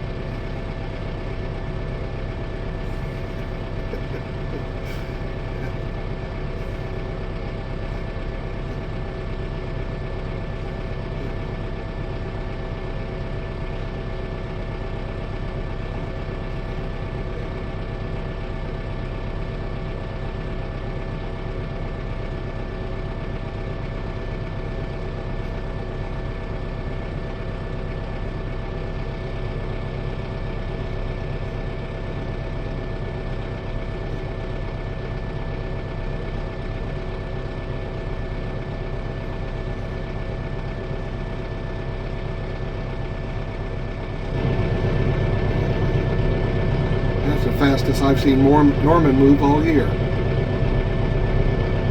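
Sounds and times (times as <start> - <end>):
mechanical drone: 0.0 - 19.1, 37.6 - 51.9.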